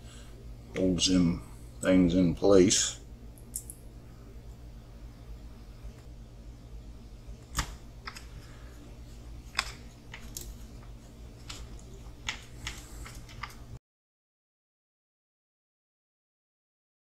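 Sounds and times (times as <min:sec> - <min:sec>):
low steady hum: 0:00.0 - 0:13.8
small parts and tools clicking: 0:03.4 - 0:03.8, 0:09.5 - 0:10.6, 0:11.4 - 0:13.6.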